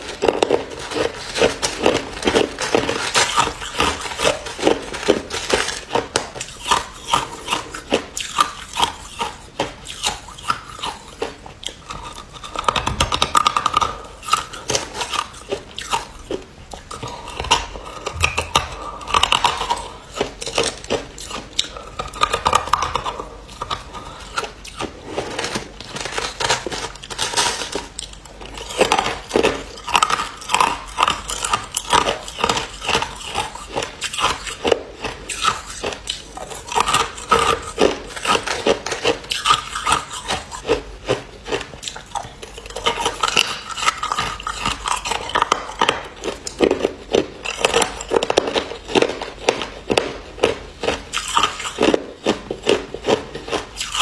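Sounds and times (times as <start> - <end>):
person chewing ice crunches: 0.0 - 54.0.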